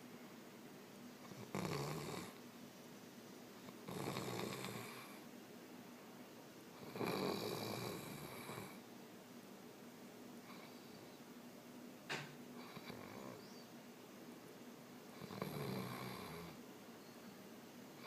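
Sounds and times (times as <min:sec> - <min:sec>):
man snoring: 0:01.3 - 0:02.4, 0:03.9 - 0:05.1, 0:06.8 - 0:08.8, 0:15.2 - 0:16.6.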